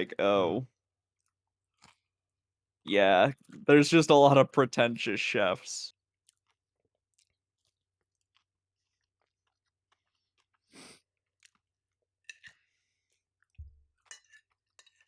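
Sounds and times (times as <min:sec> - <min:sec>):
person chewing: 0:01.2 - 0:02.1, 0:06.2 - 0:15.0
mouth clicks and crunches: 0:07.2 - 0:10.8.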